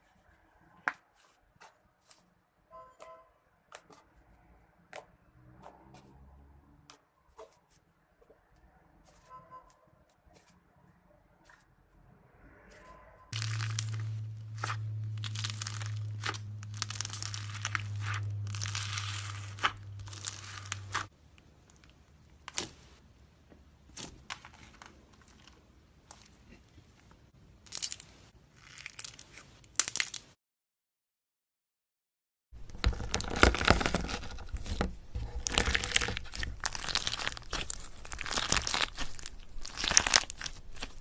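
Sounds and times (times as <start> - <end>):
slime crackling: 13.4 - 23.0, 32.6 - 41.0.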